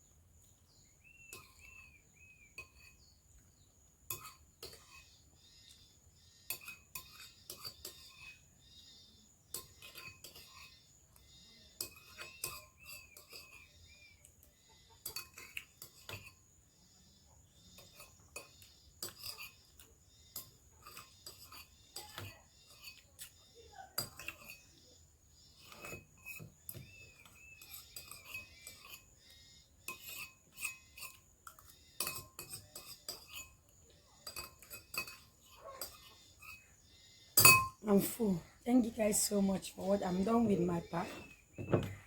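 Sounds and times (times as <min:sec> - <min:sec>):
bird chirping: 0:00.0 - 0:42.0
spoon clinking against dishes: 0:01.0 - 0:03.1, 0:04.0 - 0:05.2, 0:06.4 - 0:08.5, 0:09.5 - 0:16.5, 0:17.7 - 0:24.9, 0:25.6 - 0:38.2.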